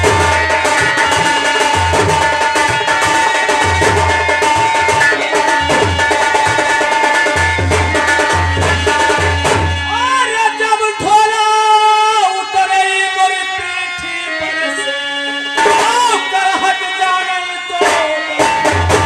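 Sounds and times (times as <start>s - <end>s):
deep drum beats: 0.0s - 10.1s
steady held tone: 0.0s - 10.3s
instrumental accompaniment: 0.0s - 19.0s.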